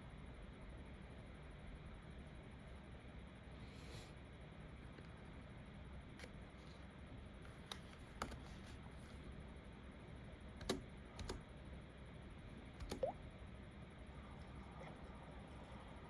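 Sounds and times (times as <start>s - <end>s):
faint room hum: 0.0s - 16.0s
computer keyboard keystrokes: 7.6s - 8.5s, 10.6s - 11.4s, 12.8s - 13.2s.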